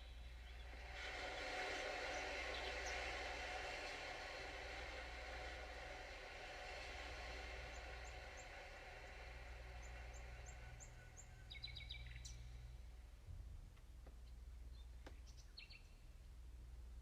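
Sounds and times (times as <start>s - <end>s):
sustained tones: 0.0s - 13.0s
wave-like noise: 0.0s - 13.2s
steady low hum: 0.0s - 17.0s
bird-like chirps: 9.8s - 12.6s.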